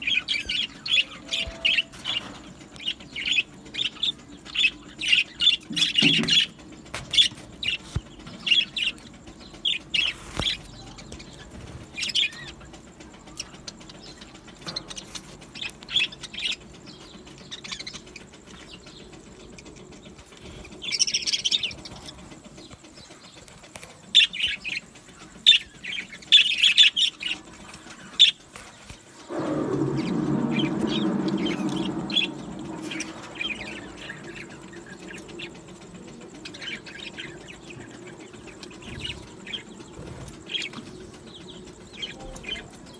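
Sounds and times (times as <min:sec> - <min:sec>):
budgerigars chirping and warbling: 0:00.0 - 0:42.9
low rushing noise: 0:29.2 - 0:36.5.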